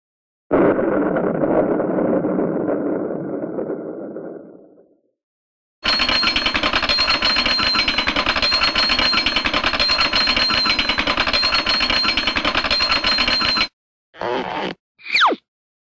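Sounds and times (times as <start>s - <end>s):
rapid mechanical rattle: 5.8s - 13.7s.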